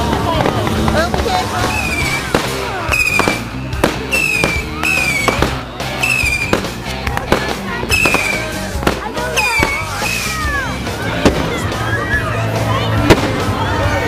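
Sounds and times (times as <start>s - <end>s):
fireworks bangs and crackles: 0.0s - 14.0s
firework whistles: 1.5s - 6.8s, 7.9s - 8.6s, 9.3s - 10.7s.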